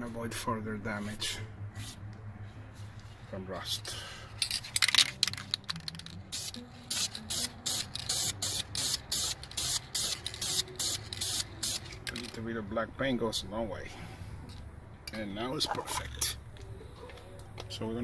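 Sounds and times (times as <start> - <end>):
spray can hissing bursts: 6.3 - 12.3.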